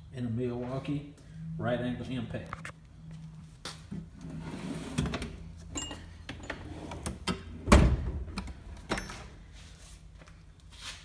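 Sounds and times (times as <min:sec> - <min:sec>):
metal drawers opening and shutting: 0:04.2 - 0:09.4.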